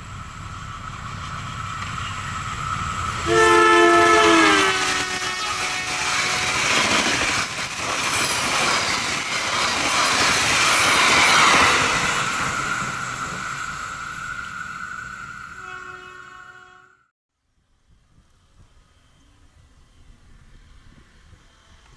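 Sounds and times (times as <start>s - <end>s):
train cars rushing past: 0.0s - 17.1s
train horn: 3.2s - 6.9s, 15.5s - 17.1s
wheels squealing on curve: 9.9s - 16.2s.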